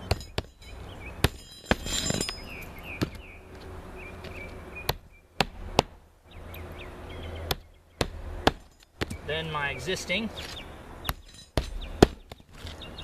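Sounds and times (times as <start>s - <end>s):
metallic ringing: 0.0s - 3.4s, 11.0s - 12.0s.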